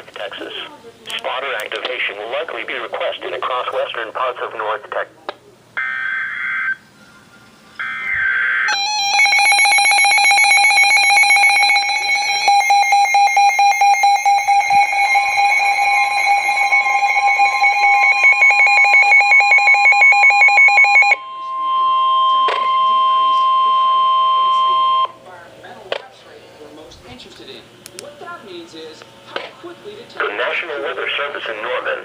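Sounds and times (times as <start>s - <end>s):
pulsing electronic alarm: 5.8s - 6.9s, 7.8s - 25.2s
warbling data tones: 7.8s - 25.1s
steady electronic tone: 7.8s - 25.2s.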